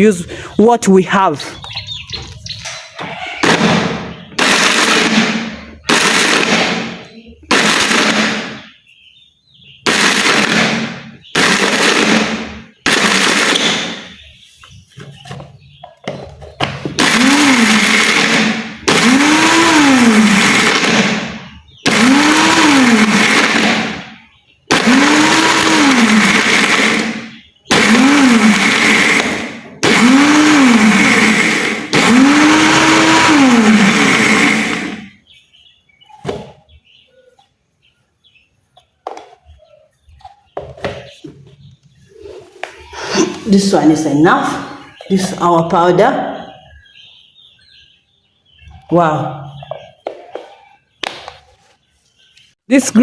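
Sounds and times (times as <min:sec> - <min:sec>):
blender grinding charcoal: 0:04.2 - 0:08.6, 0:09.9 - 0:14.1, 0:16.9 - 0:24.1, 0:24.7 - 0:35.2.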